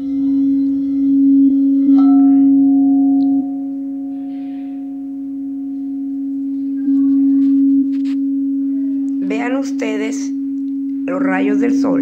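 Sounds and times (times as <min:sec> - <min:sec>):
higher singing bowl struck: 0:00.0 - 0:12.0
low singing bowl sustained tone: 0:00.0 - 0:12.0.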